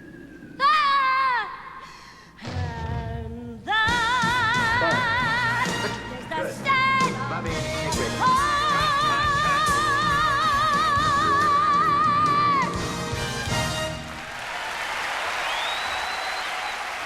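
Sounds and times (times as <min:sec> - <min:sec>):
woman singing: 0:00.6 - 0:13.0.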